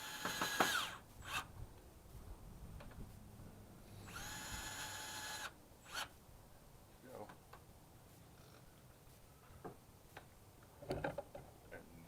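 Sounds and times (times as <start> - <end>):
drill motor spinning: 0.0 - 1.4, 4.1 - 6.1.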